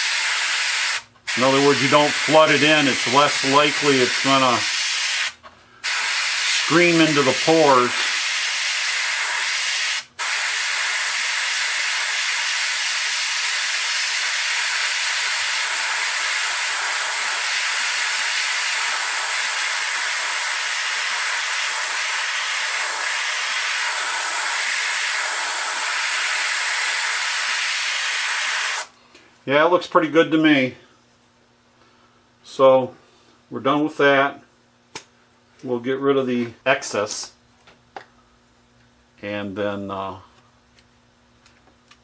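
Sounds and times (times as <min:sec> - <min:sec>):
paint sprayer hissing: 0:00.0 - 0:28.9.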